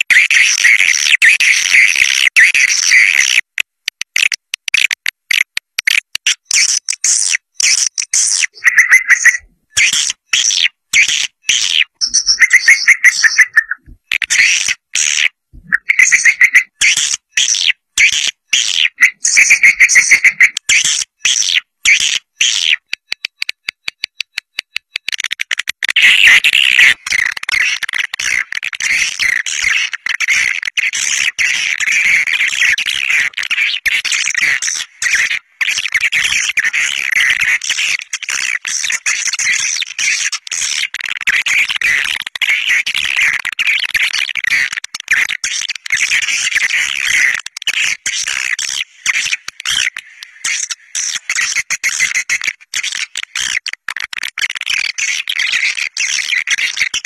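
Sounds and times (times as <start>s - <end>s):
swiftlets twittering: 6.7s - 10.6s, 11.5s - 14.8s, 15.6s - 16.8s.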